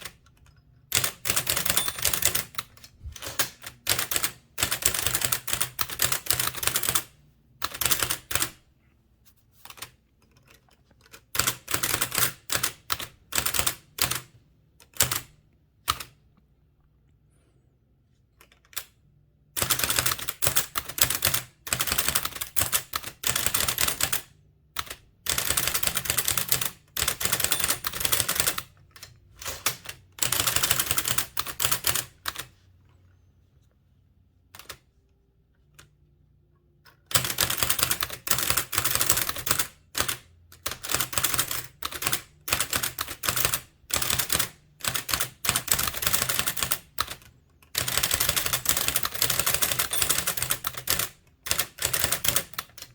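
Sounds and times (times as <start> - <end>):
typewriter keystrokes clacking: 0.0 - 8.6, 19.6 - 32.5, 37.1 - 52.9.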